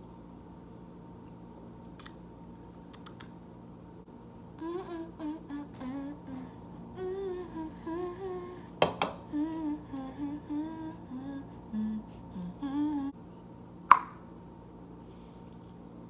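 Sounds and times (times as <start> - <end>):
woman humming: 4.6 - 13.2.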